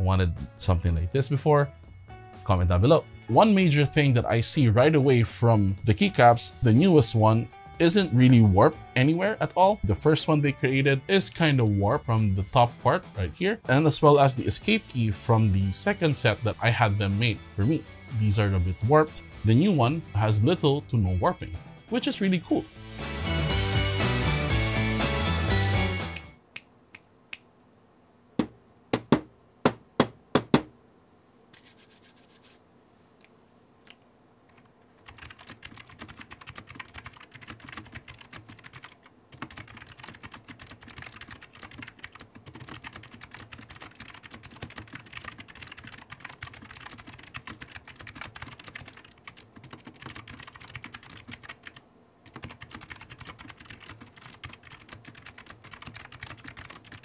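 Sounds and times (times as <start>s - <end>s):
typing on mechanical keyboard: 35.0s - 57.0s.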